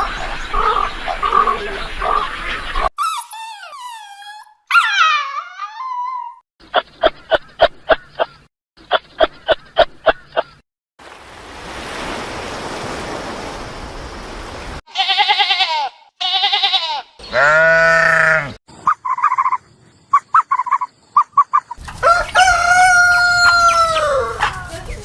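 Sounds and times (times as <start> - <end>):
animal bleating: 14.9 - 18.6
rooster crowing: 21.9 - 24.6.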